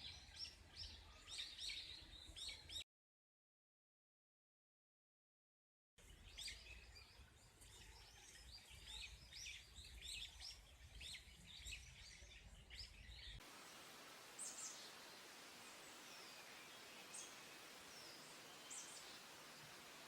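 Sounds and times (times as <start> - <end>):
small songbirds chirping: 0.0 - 2.8, 6.0 - 20.0
steady hiss: 13.4 - 20.0.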